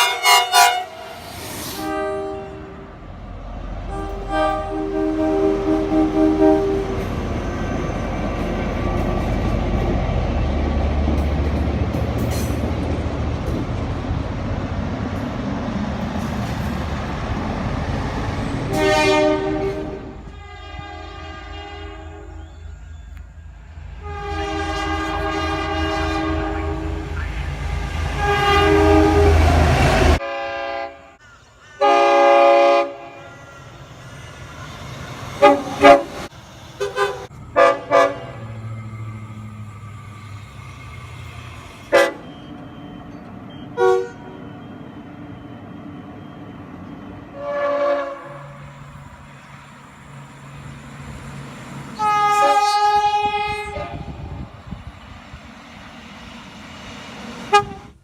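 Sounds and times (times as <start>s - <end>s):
train horn blasts: 0.0s - 3.1s, 3.8s - 9.9s, 18.7s - 22.7s, 24.0s - 31.2s, 31.8s - 33.4s, 35.4s - 38.6s, 41.9s - 44.6s, 47.2s - 49.4s, 51.9s - 54.5s, 57.4s - 58.0s
train rumbling past: 0.0s - 58.0s.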